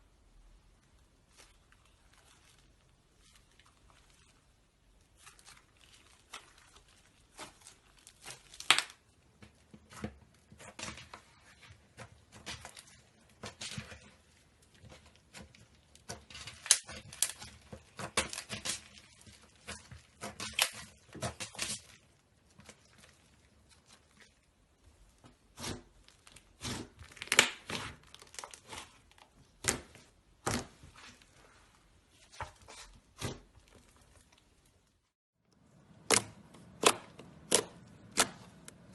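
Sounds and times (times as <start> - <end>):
slime popping and crackling: 1.2 - 24.5, 25.4 - 30.8.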